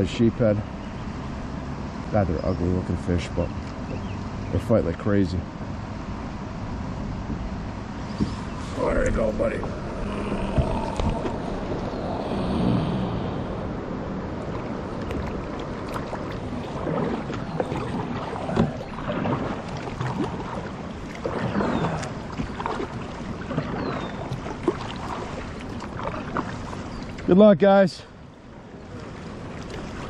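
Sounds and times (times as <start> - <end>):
water splashing around kayak: 6.7 - 30.0
wind on microphone: 7.2 - 27.0.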